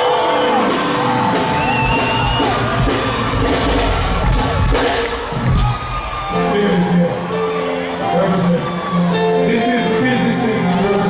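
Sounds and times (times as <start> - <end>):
live band music: 0.1 - 9.5
heavy bass and drums: 1.0 - 7.5.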